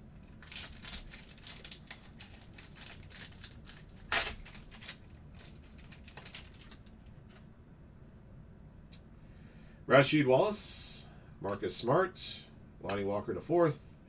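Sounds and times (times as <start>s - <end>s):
foil wrapper crinkling and tearing: 0.2s - 7.4s
sharp wrapper rip: 0.4s - 5.0s.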